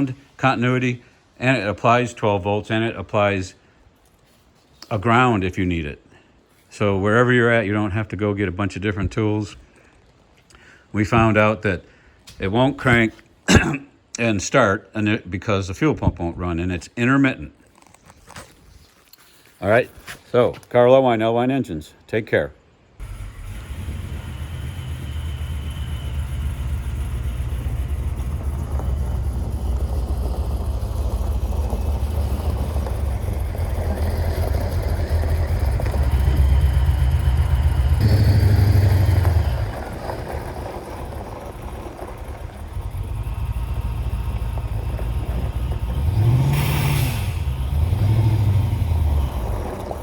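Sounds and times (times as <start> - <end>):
engine rumbling: 23.0 - 50.0
engine throttle blips: 23.0 - 50.0.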